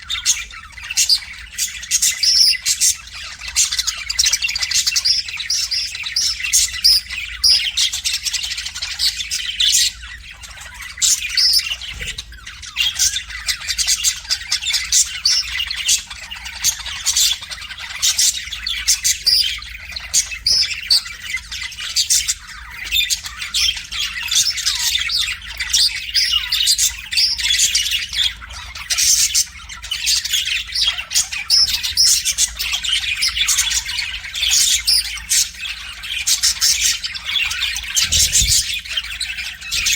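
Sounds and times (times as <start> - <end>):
budgerigar warbling: 37.8 - 38.8.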